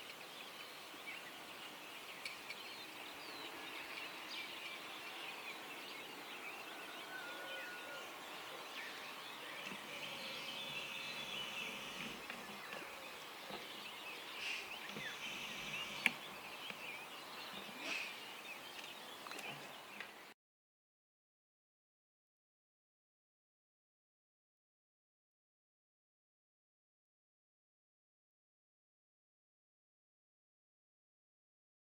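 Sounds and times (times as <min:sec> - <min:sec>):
birds chirping and singing: 0:00.0 - 0:20.3.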